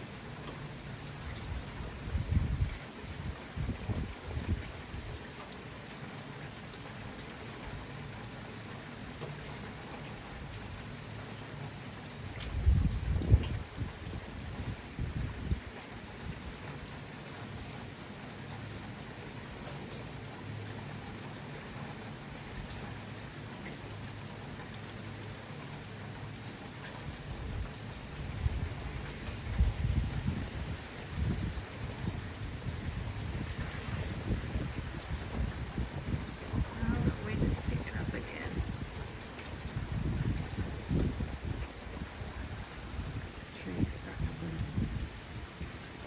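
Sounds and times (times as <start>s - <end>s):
steady rainfall: 0.0s - 46.0s
low rumbles: 27.3s - 45.4s.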